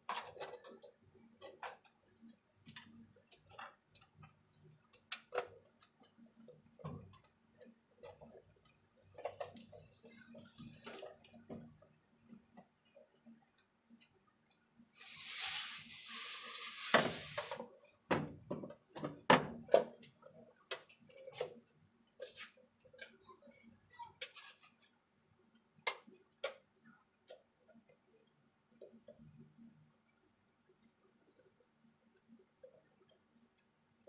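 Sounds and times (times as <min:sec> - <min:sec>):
hissing burst: 0:15.0 - 0:17.6.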